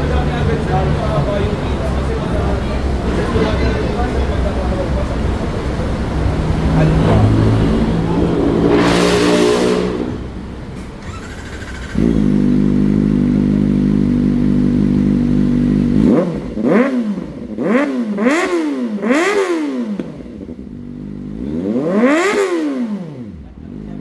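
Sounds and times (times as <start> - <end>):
motorcycle engine idling and revving: 0.0 - 24.0.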